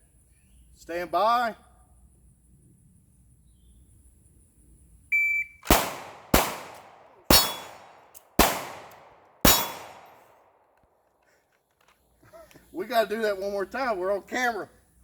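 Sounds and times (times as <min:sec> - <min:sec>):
pistol shots: 0:05.6 - 0:10.6.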